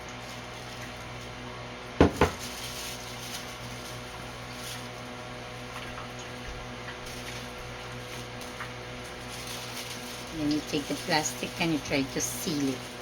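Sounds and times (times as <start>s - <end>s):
bowl knocking on counter: 2.0s - 2.4s.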